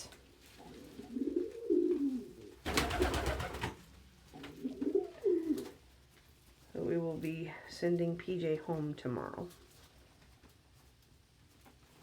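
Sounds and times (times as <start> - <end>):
pigeons cooing: 0.6 - 3.6, 4.4 - 5.8.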